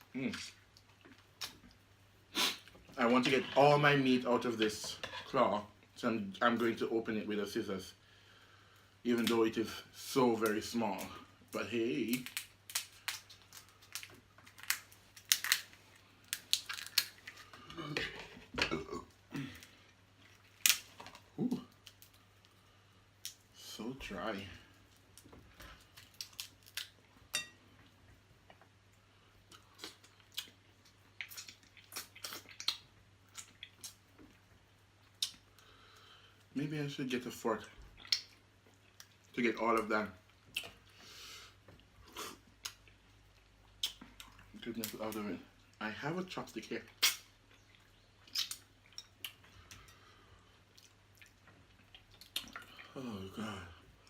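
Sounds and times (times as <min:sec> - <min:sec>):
chewing and picking at crab: 0:24.8 - 0:27.0, 0:46.9 - 0:53.0.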